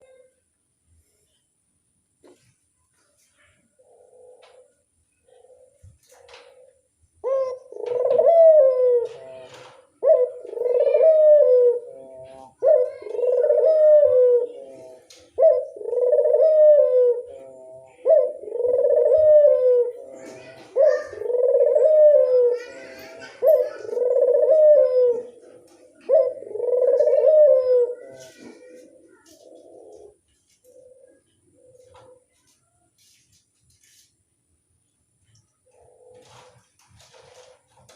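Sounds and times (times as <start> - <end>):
dove cooing: 3.7 - 32.4, 35.6 - 37.6.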